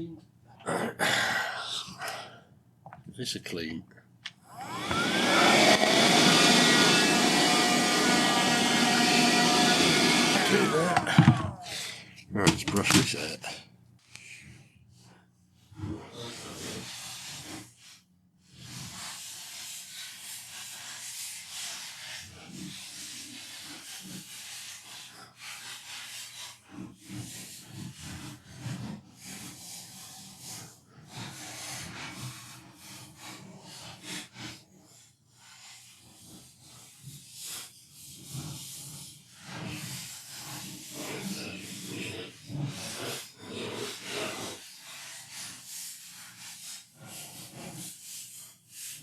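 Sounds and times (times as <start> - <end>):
brush sweeping plastic: 4.5 - 13.4, 35.4 - 49.0.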